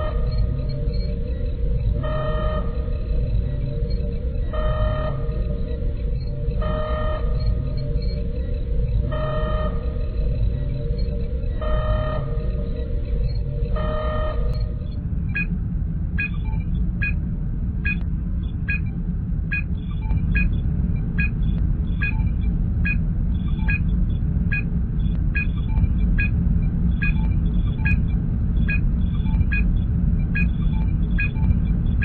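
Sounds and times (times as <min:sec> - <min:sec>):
electronic scan beep: 0:00.0 - 0:15.5, 0:16.2 - 0:17.2, 0:19.5 - 0:24.7, 0:25.4 - 0:32.0
low engine hum: 0:00.0 - 0:32.0.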